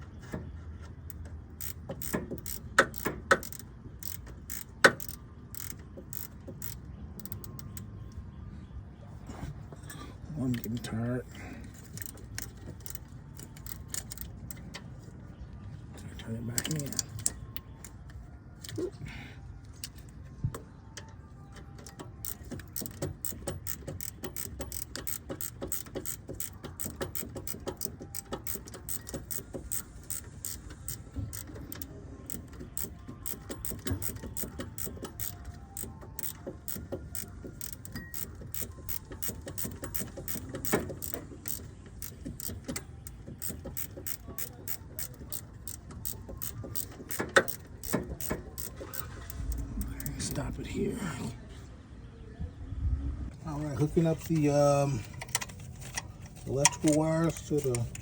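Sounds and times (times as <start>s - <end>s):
ratchet wrench clicking: 1.1s - 7.9s, 11.8s - 14.7s, 21.8s - 50.4s, 53.9s - 58.0s.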